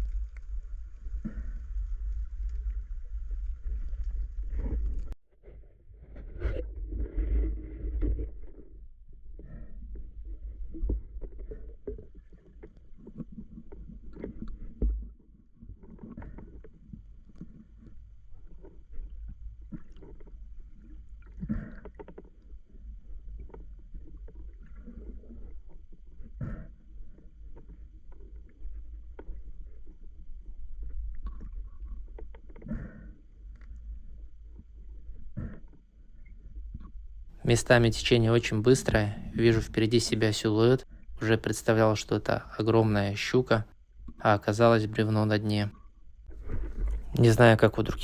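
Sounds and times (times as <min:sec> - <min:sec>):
water splashing: 0:00.0 - 0:05.2
water sloshing and rumbling: 0:00.0 - 0:48.0.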